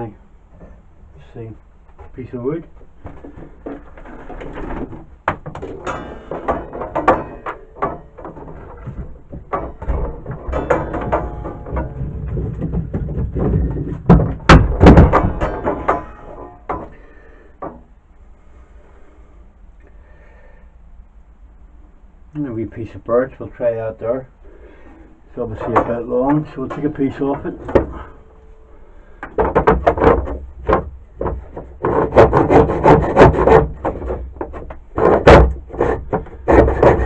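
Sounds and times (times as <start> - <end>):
wood pieces clattering: 3.0 - 17.9, 25.6 - 28.3, 29.2 - 37.0.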